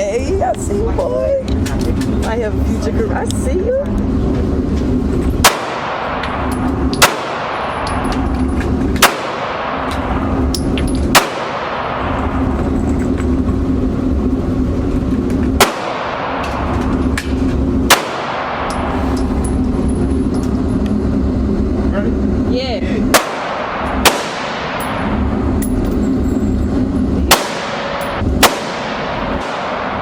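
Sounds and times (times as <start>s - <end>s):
steady low hum: 0.0s - 30.0s
gunshots echoing indoors: 5.4s - 8.1s, 9.0s - 10.4s, 11.1s - 12.5s, 15.6s - 16.8s, 17.9s - 19.0s, 23.1s - 25.2s, 27.2s - 30.0s.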